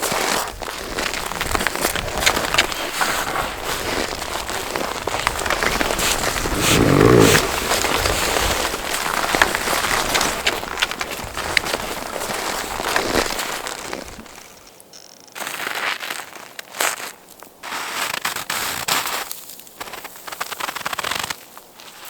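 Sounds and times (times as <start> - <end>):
hooves crunching snow: 0.0 - 14.4.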